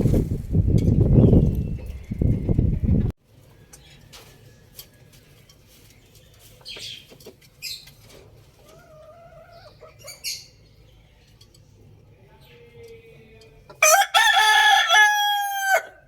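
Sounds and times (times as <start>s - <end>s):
bird chirps and calls: 9.4s - 11.4s.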